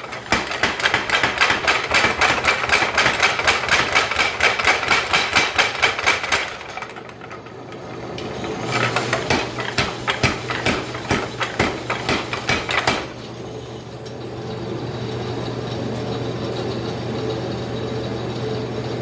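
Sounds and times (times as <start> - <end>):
power hammer strikes: 0.0 - 7.0, 8.2 - 13.2
hammer motor humming: 0.0 - 19.0.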